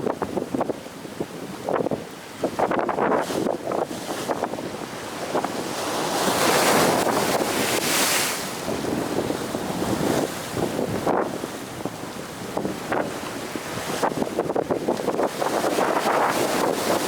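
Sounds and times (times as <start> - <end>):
ocean surf breaking: 1.6 - 17.0
wave crashing: 2.6 - 17.0.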